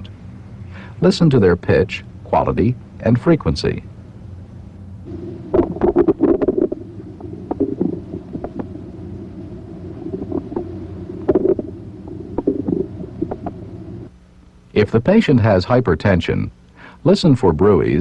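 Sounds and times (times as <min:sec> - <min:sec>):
steady low hum: 0:00.0 - 0:18.0
bowel gurgles and clicks: 0:05.5 - 0:08.7, 0:10.0 - 0:13.6.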